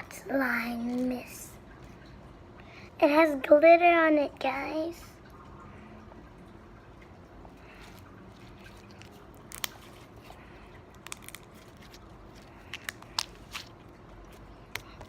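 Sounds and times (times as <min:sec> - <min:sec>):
slime clicking and popping: 0:09.0 - 0:09.9, 0:11.0 - 0:12.0.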